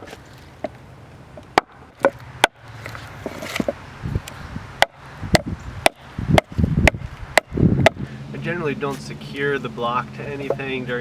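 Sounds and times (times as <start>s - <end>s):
adze chopping wood: 1.5s - 2.6s, 4.8s - 8.0s.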